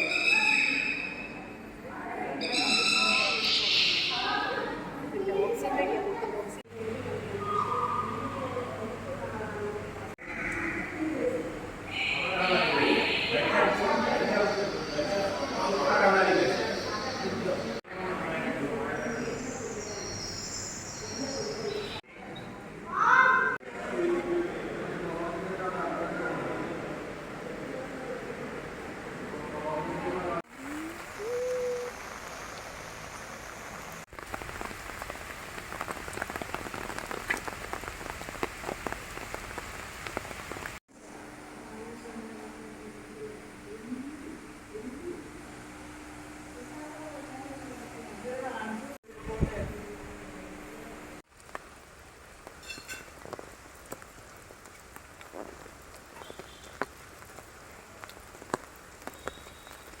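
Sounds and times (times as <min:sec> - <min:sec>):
high-pitched chirp: 0:00.0 - 0:01.4, 0:02.4 - 0:04.5
rain drops pattering: 0:30.4 - 0:40.8, 0:51.2 - 1:00.0.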